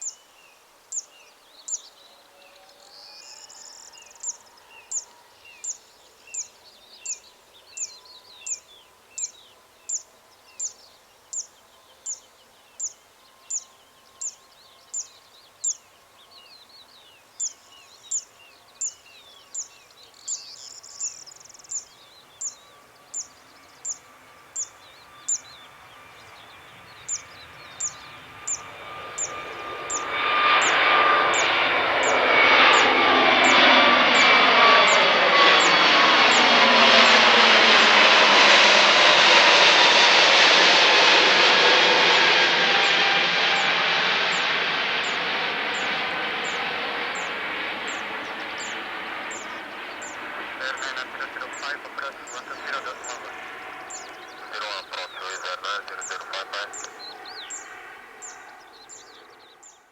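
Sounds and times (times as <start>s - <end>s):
jet engines whining: 24.0s - 59.1s.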